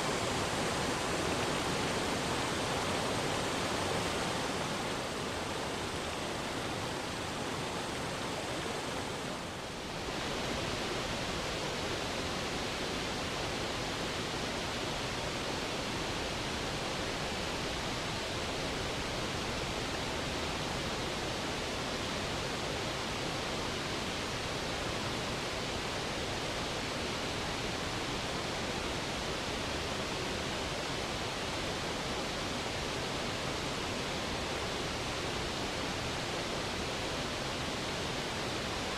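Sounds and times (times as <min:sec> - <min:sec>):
waterfall rushing: 0:00.0 - 0:22.4.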